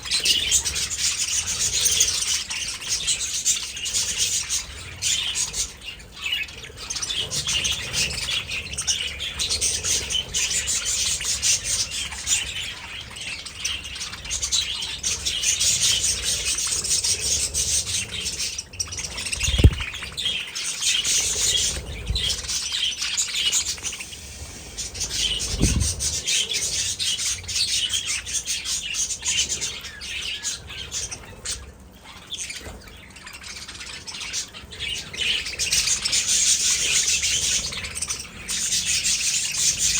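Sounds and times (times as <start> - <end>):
budgerigars chirping: 0.0 - 39.9
low thumps: 19.4 - 19.9, 25.4 - 26.0.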